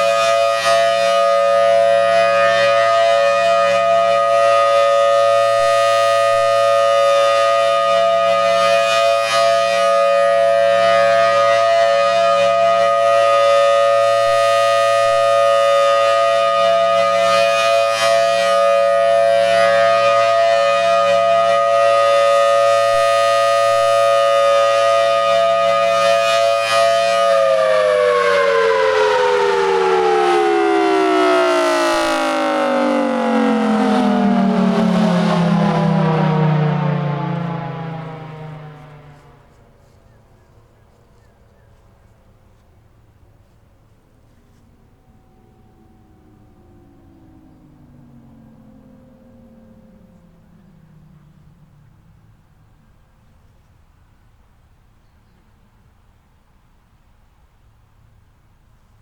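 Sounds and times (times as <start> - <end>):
warning siren two-tone chord: 0.0 - 40.0, 44.0 - 53.5.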